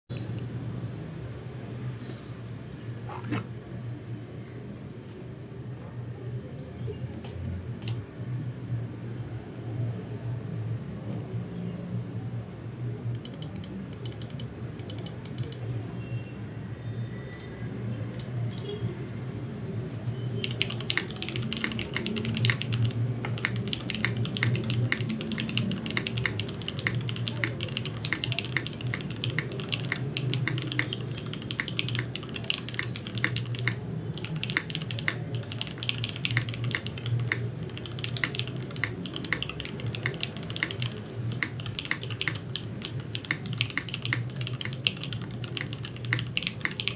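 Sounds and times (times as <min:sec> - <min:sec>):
mechanical keyboard typing: 0:13.1 - 0:15.8, 0:17.3 - 0:18.9, 0:20.4 - 0:46.9.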